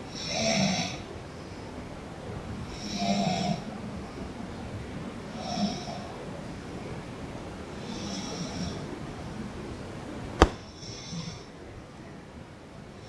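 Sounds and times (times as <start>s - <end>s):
sharp click: 10.4s - 10.7s.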